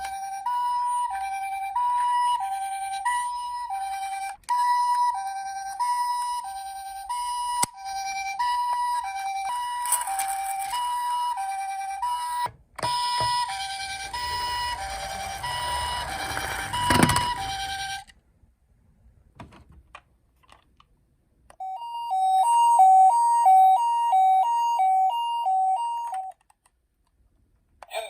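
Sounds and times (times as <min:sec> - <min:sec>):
toy electronic two-tone siren: 0:00.0 - 0:18.1, 0:21.5 - 0:26.4
rolling rumble: 0:13.6 - 0:17.9.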